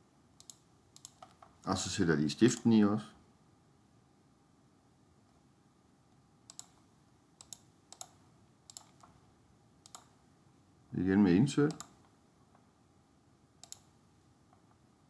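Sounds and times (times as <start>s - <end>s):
computer mouse clicks: 0.4s - 1.6s, 6.5s - 9.2s, 9.8s - 10.2s, 11.7s - 12.6s, 13.6s - 14.7s.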